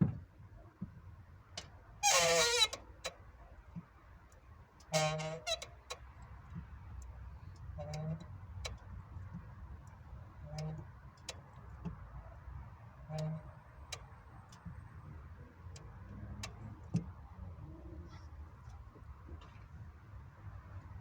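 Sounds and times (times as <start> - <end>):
clutch low tone and sharp click: 15.7 - 17.2.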